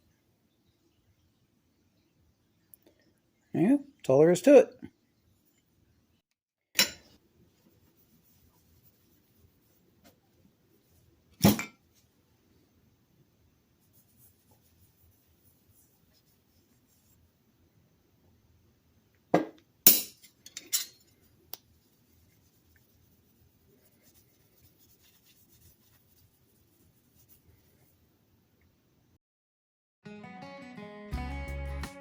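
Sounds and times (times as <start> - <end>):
handling and rubbing: 7.5 - 11.2, 13.8 - 17.3, 20.4 - 28.1.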